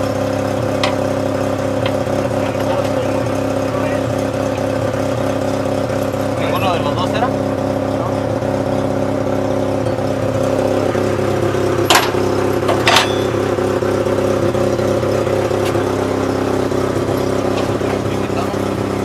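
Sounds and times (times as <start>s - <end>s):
engine running: 0.0s - 19.0s
sharp knocks: 11.9s - 13.3s.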